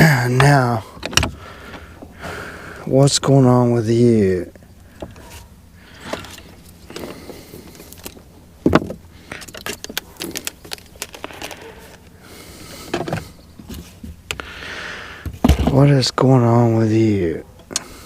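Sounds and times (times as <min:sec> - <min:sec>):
small hard parts clicking and rattling: 0:06.0 - 0:12.1.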